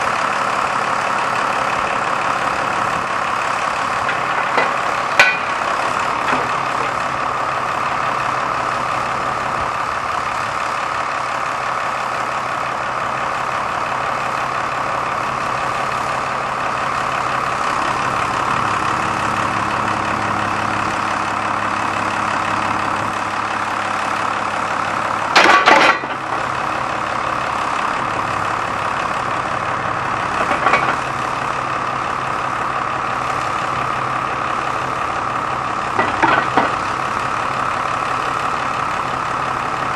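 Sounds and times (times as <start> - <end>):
diesel engine running: 0.0 - 39.9
lower engine tone: 0.0 - 39.9.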